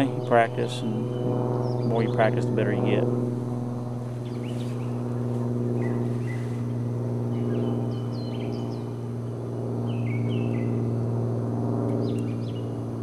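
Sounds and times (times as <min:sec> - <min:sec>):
small birds chirping and whistling: 0:00.0 - 0:03.0, 0:04.2 - 0:06.7, 0:07.3 - 0:09.0, 0:09.8 - 0:10.9, 0:11.9 - 0:12.8
steady low hum: 0:00.0 - 0:13.0.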